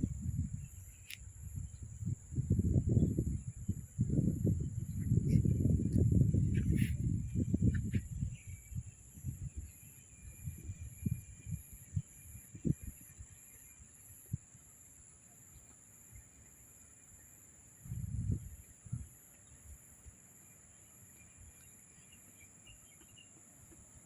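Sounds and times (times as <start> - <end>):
high-pitched insect drone: 0.0 - 14.3
faint bird chirps: 4.5 - 13.9, 20.6 - 24.0.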